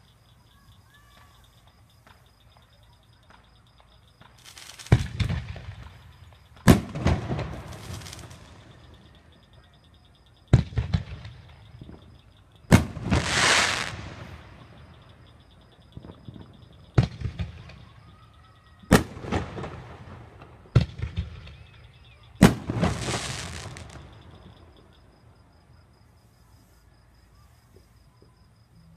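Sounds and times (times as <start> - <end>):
fireworks crackling: 0.0 - 9.7, 10.3 - 26.8
fireworks banging: 1.0 - 9.4, 10.4 - 18.2, 18.8 - 25.0.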